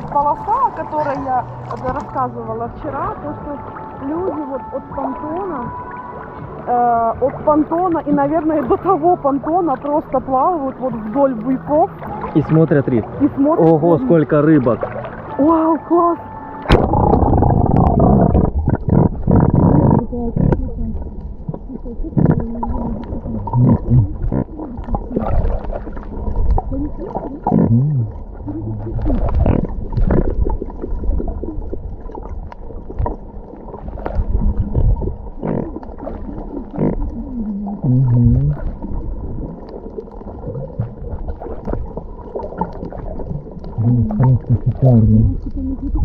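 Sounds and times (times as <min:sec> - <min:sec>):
muffled water sloshing and bubbling: 0:00.0 - 0:46.0
low muffled pitched glides: 0:16.3 - 0:39.6.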